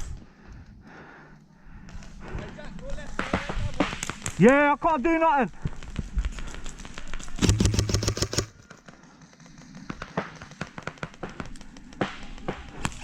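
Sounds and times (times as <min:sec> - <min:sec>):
airsoft gun shots: 0:07.4 - 0:08.6.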